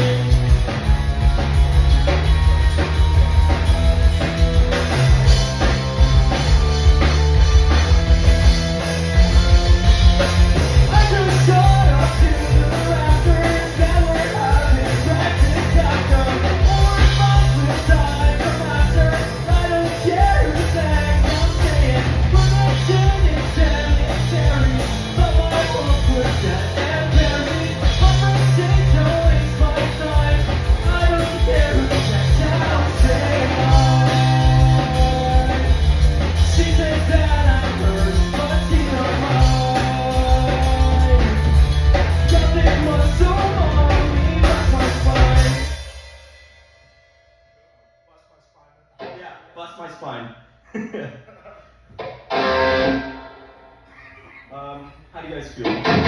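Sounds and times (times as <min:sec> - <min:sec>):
rock band playing: 0:00.0 - 0:46.9, 0:51.9 - 0:53.9, 0:55.6 - 0:56.0
person singing: 0:10.8 - 0:45.8.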